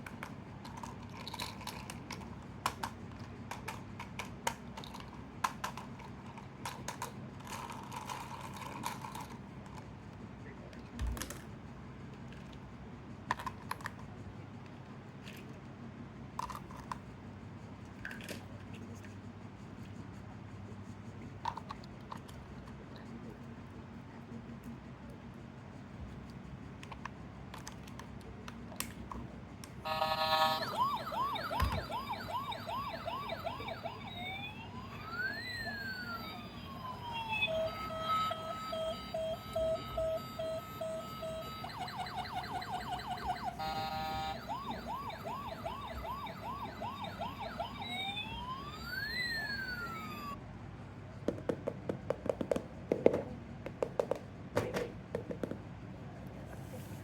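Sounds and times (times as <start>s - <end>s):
toy siren wailing and yelping: 29.9s - 50.4s.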